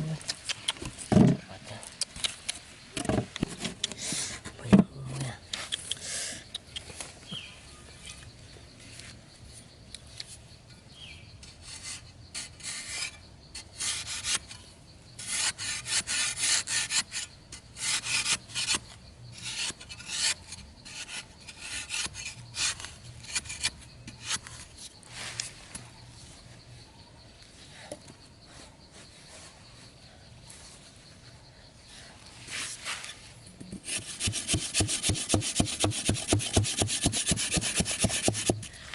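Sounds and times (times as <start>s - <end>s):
tool scraping rough surface: 15.2s - 25.5s, 32.5s - 38.7s.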